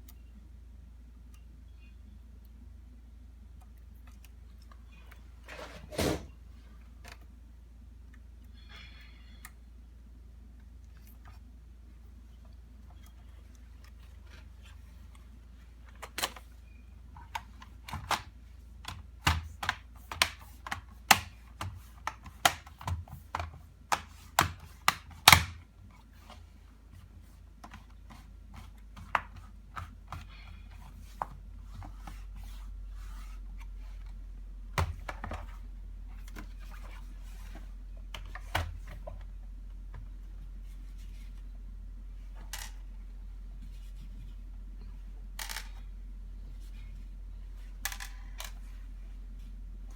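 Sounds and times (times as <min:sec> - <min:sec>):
steady low hum: 0:00.0 - 0:49.9
plastic parts clicking and knocking: 0:17.1 - 0:25.6, 0:45.4 - 0:45.8, 0:47.8 - 0:48.7.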